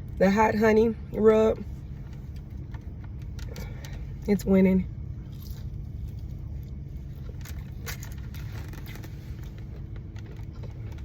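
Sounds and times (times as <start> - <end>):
car engine low rumble: 0.0 - 11.0.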